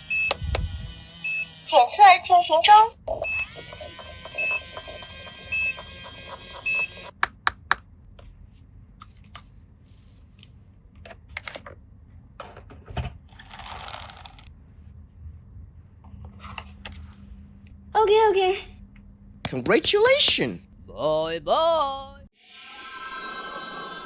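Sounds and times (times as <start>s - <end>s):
toy electronic scanning sound: 0.0s - 7.2s
short high beeps: 3.1s - 7.1s
plastic clicks and taps: 7.1s - 7.8s.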